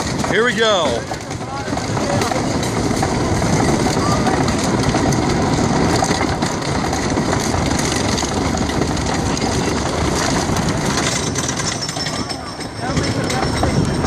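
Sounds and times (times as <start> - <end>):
roller coaster rumbling on track: 0.0 - 14.0.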